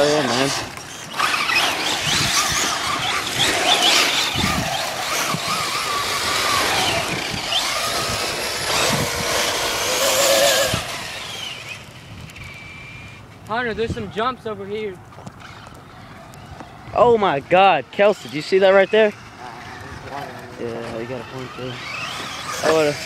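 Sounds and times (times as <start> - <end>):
electric motor whining: 0.0 - 13.4, 18.0 - 23.0
tyres on gravel: 0.0 - 13.8, 14.5 - 23.0.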